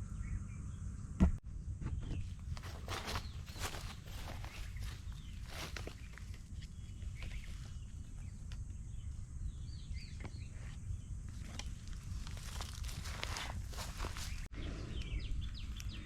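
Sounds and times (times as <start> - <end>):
steady low rumble: 0.0 - 16.0
bird chirps: 1.8 - 11.8, 12.4 - 16.0
crunching on leafy forest floor: 2.2 - 9.5, 11.2 - 14.5.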